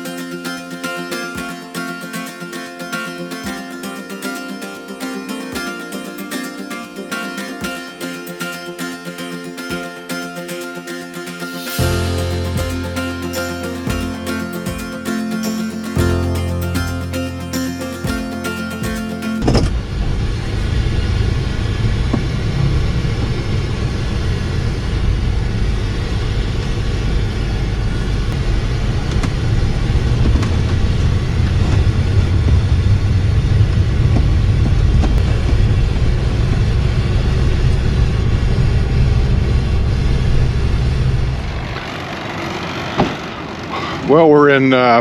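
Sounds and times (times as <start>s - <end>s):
road and engine rumble inside vehicle: 19.4s - 44.0s.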